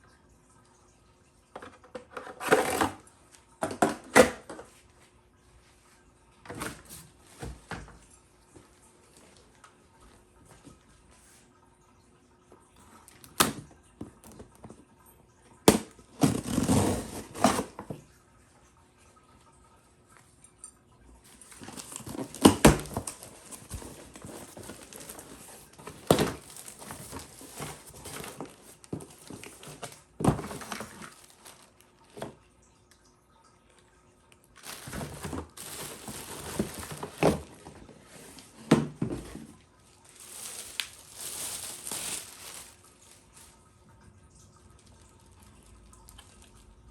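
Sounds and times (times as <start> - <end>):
plastic and cardboard rustling: 1.6 - 4.9, 6.4 - 11.4, 15.7 - 18.0, 21.2 - 32.4, 34.6 - 43.8.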